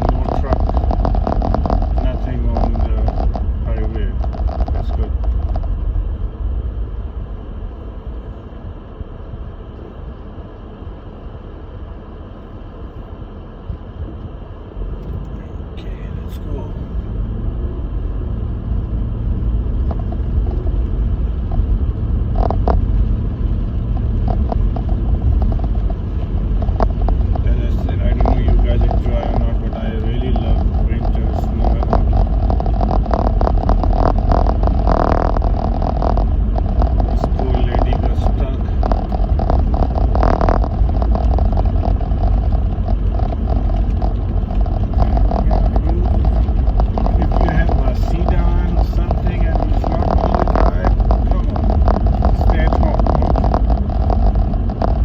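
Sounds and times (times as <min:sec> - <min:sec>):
noisy burst: 0:00.0 - 0:55.0
tyres and engine rumbling: 0:00.0 - 0:55.0
small clicks: 0:19.4 - 0:55.0.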